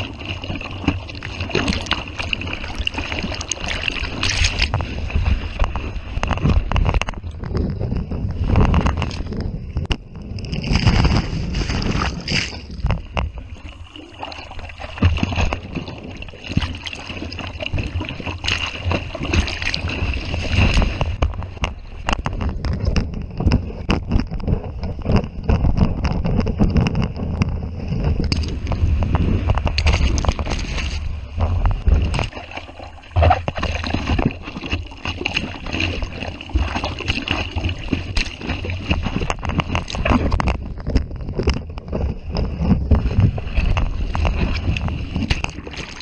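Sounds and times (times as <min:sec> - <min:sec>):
surf washing: 0:00.0 - 0:06.9, 0:11.0 - 0:22.2, 0:28.5 - 0:40.4
wind buffeting microphone: 0:00.0 - 0:46.0.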